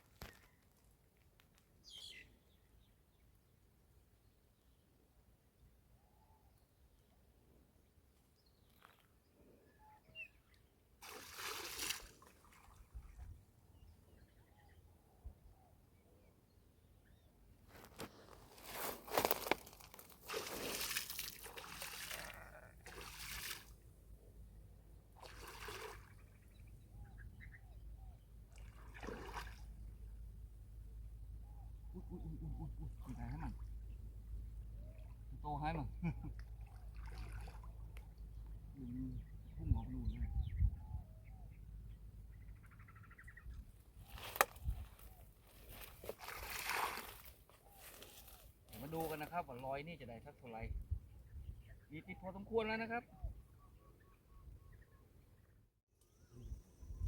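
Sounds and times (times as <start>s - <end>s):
water splashing and sloshing: 11.0s - 13.3s, 19.2s - 23.8s, 25.1s - 26.7s, 28.4s - 30.2s, 36.4s - 38.2s, 45.6s - 48.3s.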